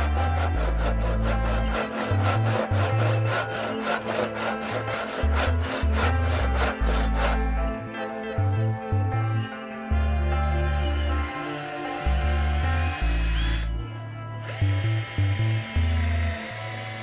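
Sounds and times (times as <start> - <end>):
hand saw cutting wood: 0.0 - 7.8, 14.5 - 17.0
background music with deep bass: 0.0 - 17.0.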